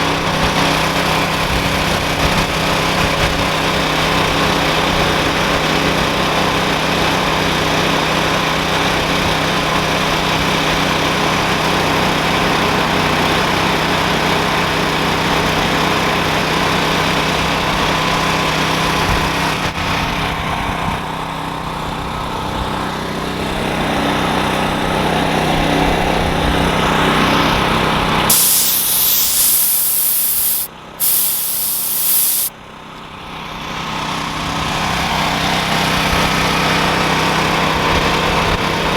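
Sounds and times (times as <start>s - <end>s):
air compressor hiss: 28.3s - 32.5s.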